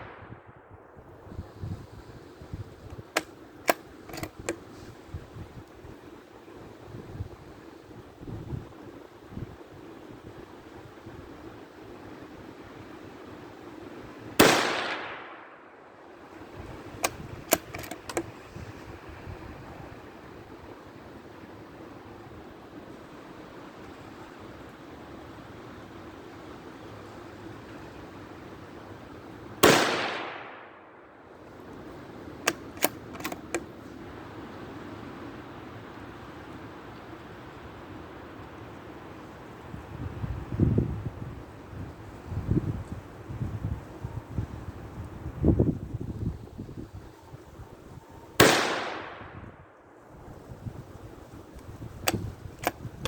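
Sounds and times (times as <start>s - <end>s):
rifle shot: 0.0s - 0.7s, 14.4s - 15.7s, 29.6s - 30.9s, 48.4s - 49.5s
wind noise on microphone: 0.0s - 15.4s, 16.3s - 21.3s, 37.6s - 53.0s
rifle bolt clicks: 2.9s - 4.9s, 16.7s - 18.5s, 32.4s - 33.7s, 51.5s - 53.0s.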